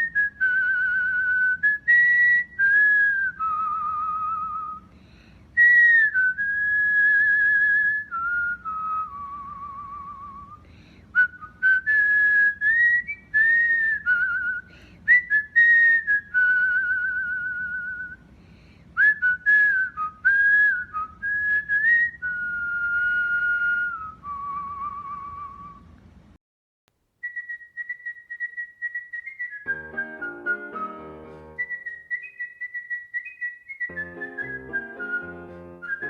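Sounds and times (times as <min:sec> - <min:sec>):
cockatiel whistling: 0:27.2 - 0:36.0.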